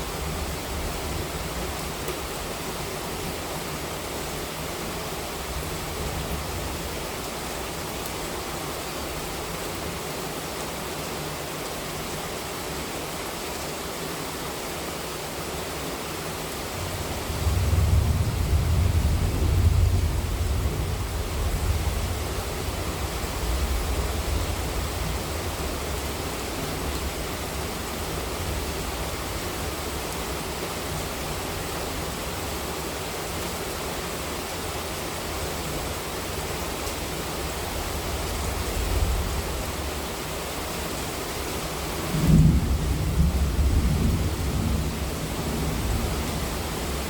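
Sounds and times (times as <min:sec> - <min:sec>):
heavy rain falling: 0:00.0 - 0:47.0
low rumble of thunder: 0:17.2 - 0:26.2, 0:42.0 - 0:47.0.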